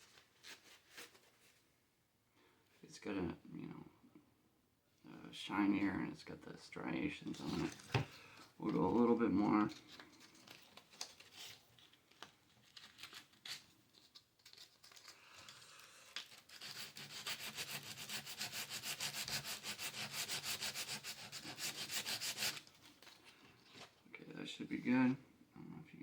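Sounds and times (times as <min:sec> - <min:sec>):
sandpaper rubbing on metal: 0:16.5 - 0:22.6.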